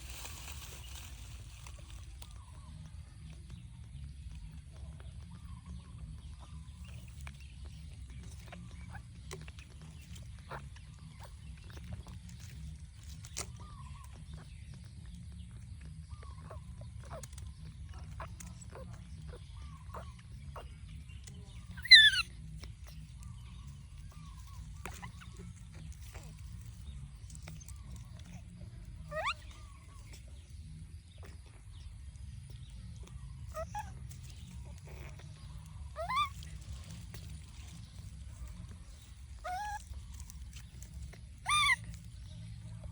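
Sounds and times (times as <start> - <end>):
baby monkey calls: 21.5 - 23.0, 27.9 - 30.2, 33.4 - 37.8, 38.5 - 42.3.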